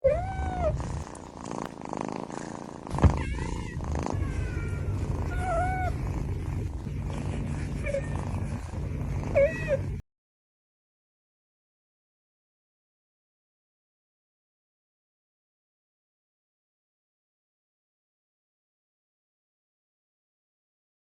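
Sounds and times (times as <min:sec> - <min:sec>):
cat meowing: 0:00.0 - 0:01.0, 0:02.9 - 0:06.1, 0:07.7 - 0:08.6, 0:09.2 - 0:10.0
cat purring: 0:00.0 - 0:10.0.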